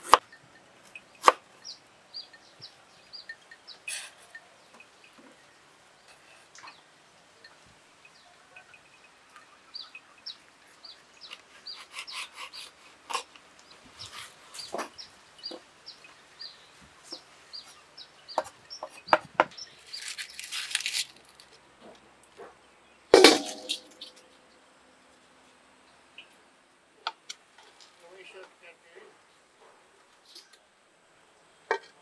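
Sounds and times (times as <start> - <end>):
rustle: 0.0 - 32.0
bird chirping: 0.2 - 12.6, 13.6 - 20.9, 22.7 - 24.6.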